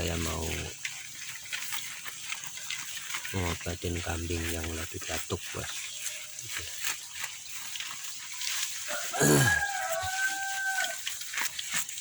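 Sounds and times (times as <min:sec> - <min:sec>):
rooster crowing: 0:08.8 - 0:11.2.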